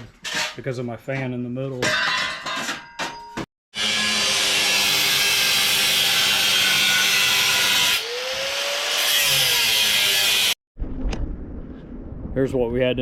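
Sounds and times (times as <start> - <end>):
power tool cutting metal bar: 3.8 - 10.6.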